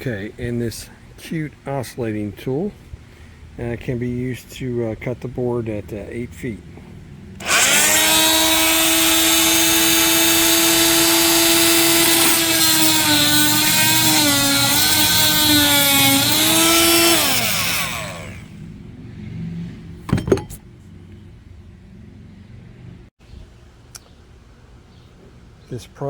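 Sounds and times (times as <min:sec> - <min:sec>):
multi-tool cutting wood: 0:07.4 - 0:18.6.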